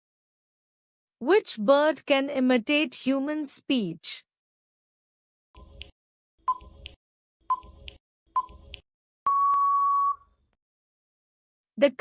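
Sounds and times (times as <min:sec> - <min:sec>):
electronic timer ticks: 0:06.5 - 0:08.8
long steady beep: 0:09.3 - 0:10.2.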